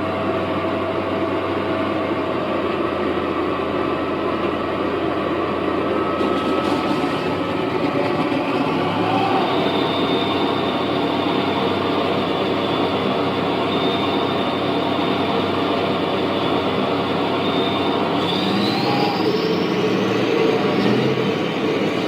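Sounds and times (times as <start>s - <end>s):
recorded tank engine through speaker: 0.0s - 22.0s
rising whine: 5.3s - 22.0s.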